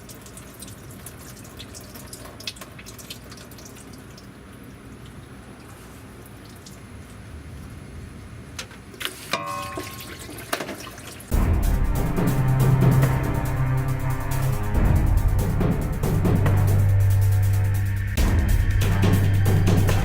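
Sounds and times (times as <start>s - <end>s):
oil trickling into a pan: 0.0s - 6.9s.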